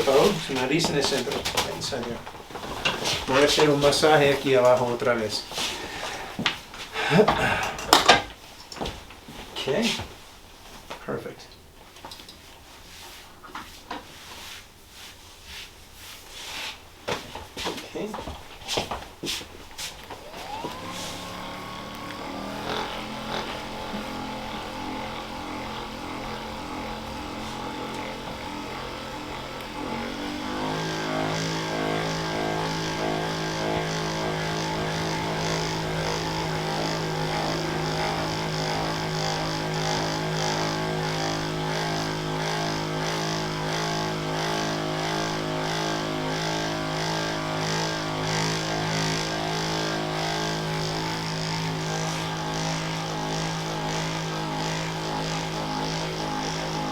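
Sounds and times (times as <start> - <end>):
electric massager whining: 0.0 - 8.9, 19.9 - 56.9.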